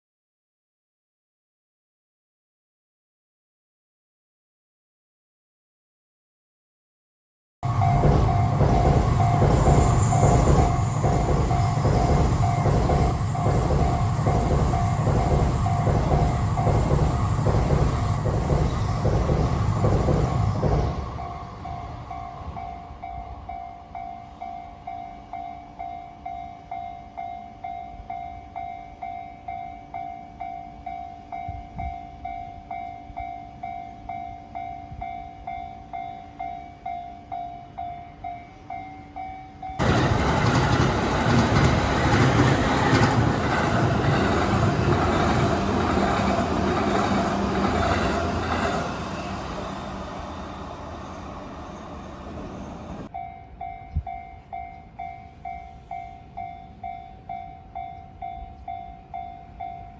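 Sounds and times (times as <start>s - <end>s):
train wheels rushing on rails: 7.6s - 24.0s, 39.8s - 53.1s
crossing warning bell ringing: 7.6s - 59.9s.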